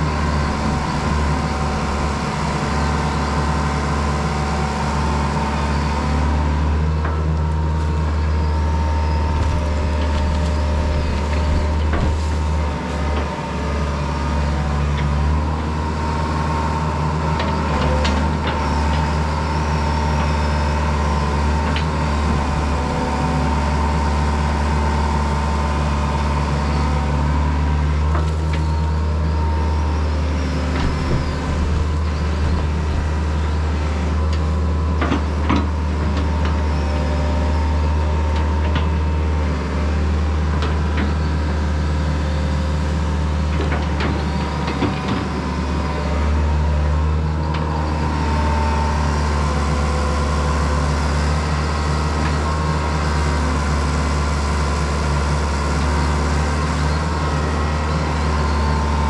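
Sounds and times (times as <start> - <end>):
heavy diesel engine droning: 0.0 - 59.0.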